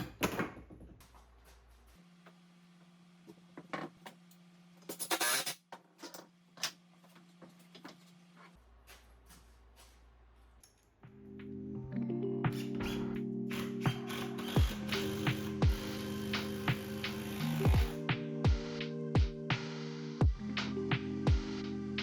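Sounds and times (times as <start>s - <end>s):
music: 11.0s - 22.0s.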